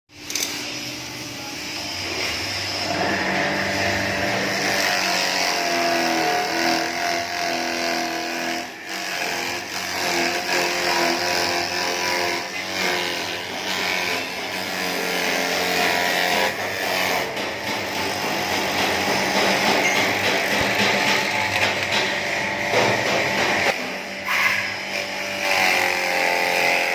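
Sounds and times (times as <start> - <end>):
electric grass chopper running: 2.8 - 11.9.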